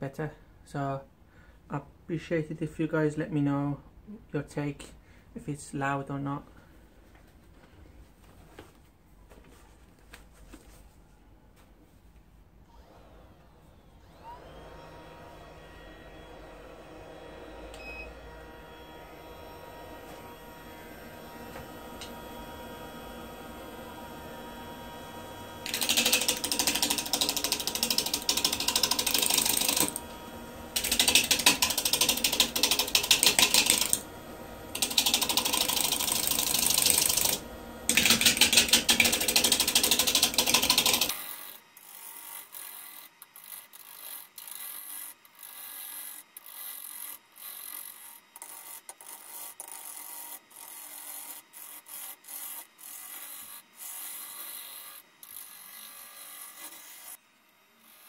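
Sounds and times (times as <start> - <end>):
lathe gouge clattering on wood: 24.0 - 41.1.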